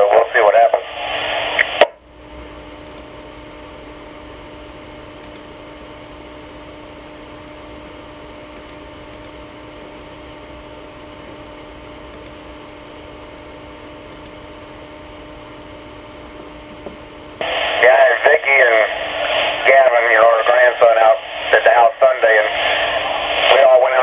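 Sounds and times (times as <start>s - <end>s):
radio receiver hiss: 0.0s - 2.0s, 17.4s - 24.0s
low even hum: 0.0s - 24.0s.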